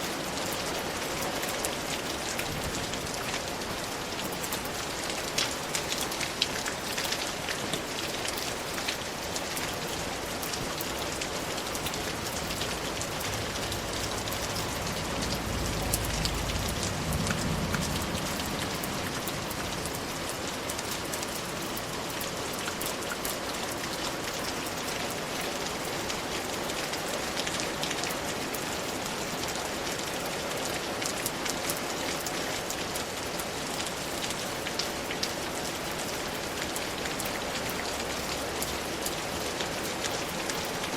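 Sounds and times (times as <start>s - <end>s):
raindrops ticking: 0.0s - 40.9s
steady rain falling: 0.0s - 40.9s
low rumble: 13.2s - 20.6s.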